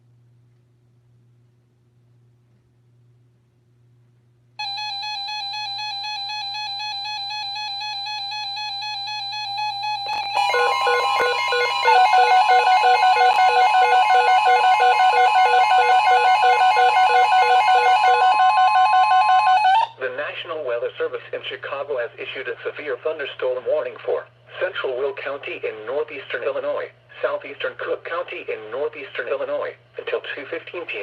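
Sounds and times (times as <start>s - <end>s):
pulsing beeps: 6.6s - 19.9s
steady higher tone: 10.0s - 19.9s
warbling alert tone: 10.0s - 19.9s.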